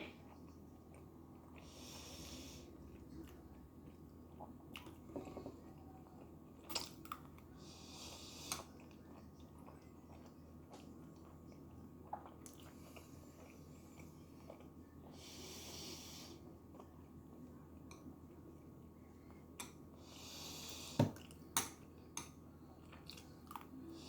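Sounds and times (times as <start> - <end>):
person chewing wet mouth sounds: 2.4 - 15.3.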